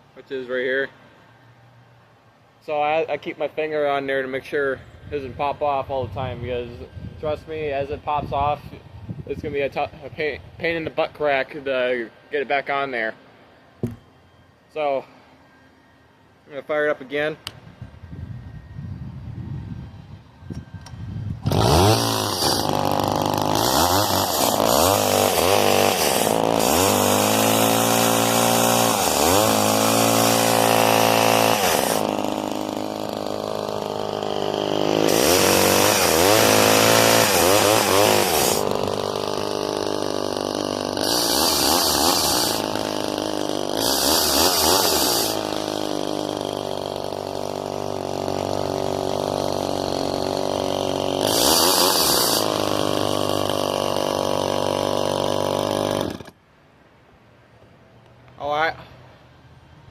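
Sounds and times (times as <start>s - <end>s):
chainsaw revving: 21.4s - 56.4s.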